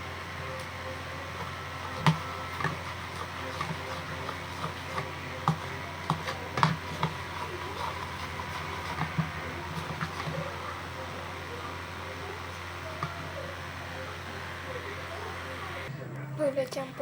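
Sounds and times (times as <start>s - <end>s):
steady low hum: 0.0s - 17.0s
spoon stirring slime: 0.5s - 13.8s.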